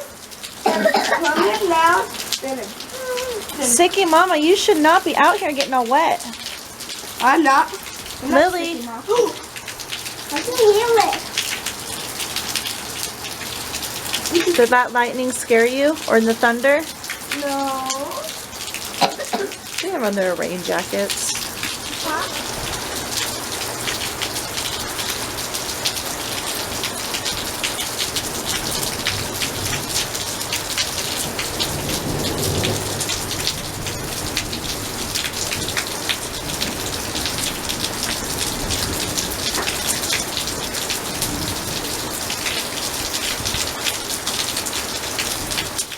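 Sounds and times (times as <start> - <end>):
heavy rain on hard surfaces: 0.0 - 45.9
low rumble of thunder: 28.1 - 42.3.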